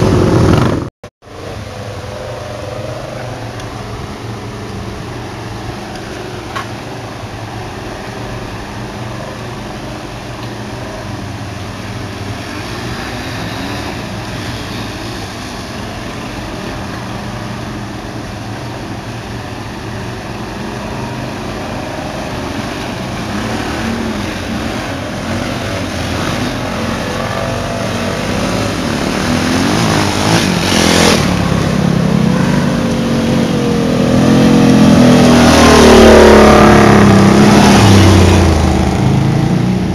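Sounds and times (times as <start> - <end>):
loud burst of noise: 0.0 - 0.9
atv engine revving: 0.0 - 39.9.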